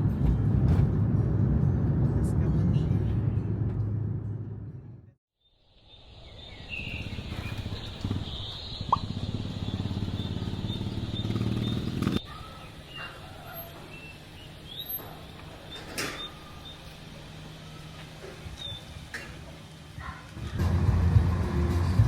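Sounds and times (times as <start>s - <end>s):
vehicle engine rumbling: 0.0s - 5.2s, 6.8s - 12.9s.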